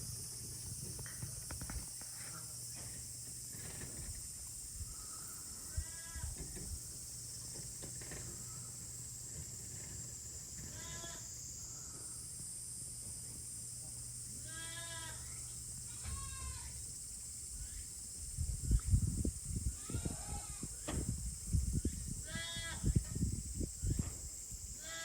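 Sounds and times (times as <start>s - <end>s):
steady high-pitched hiss: 0.0s - 25.0s
goat kids bleating: 5.7s - 6.3s, 10.7s - 11.3s, 14.4s - 16.8s, 19.8s - 20.6s, 22.2s - 22.8s, 24.8s - 25.0s.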